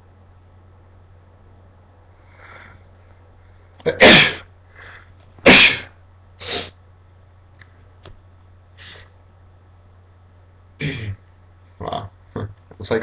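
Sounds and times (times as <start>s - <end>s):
man sneezing: 3.9s - 4.5s, 5.4s - 6.8s, 10.8s - 11.2s.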